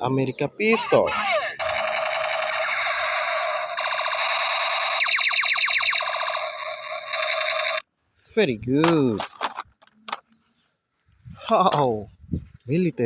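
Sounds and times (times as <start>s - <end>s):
warbling siren-like toy tone: 1.2s - 7.8s
laser-like sweeps: 1.6s - 7.8s.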